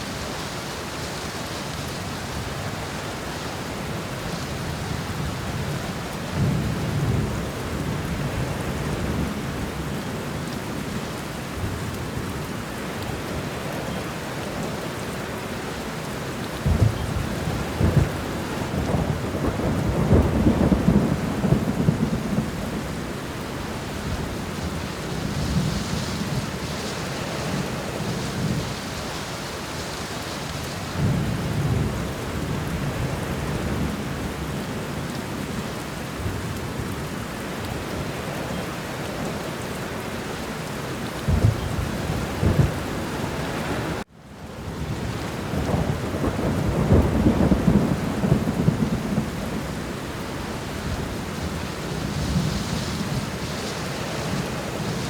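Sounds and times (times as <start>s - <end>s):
steady rain: 0.0s - 55.0s
rolling thunder: 16.6s - 34.5s, 41.2s - 44.0s, 44.7s - 55.0s.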